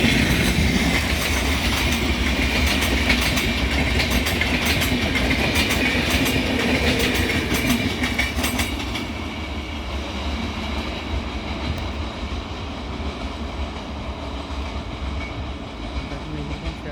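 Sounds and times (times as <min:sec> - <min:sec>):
train wheels clattering over joints: 0:00.0 - 0:09.4
train rumble: 0:00.0 - 0:16.9.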